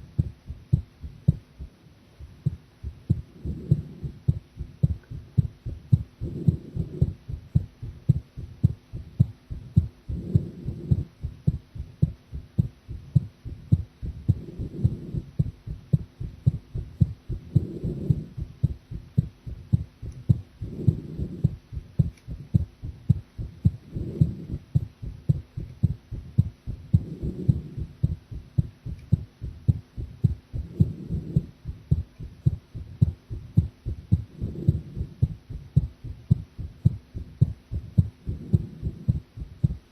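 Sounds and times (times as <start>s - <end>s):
heartbeat low thuds: 0.0s - 39.9s.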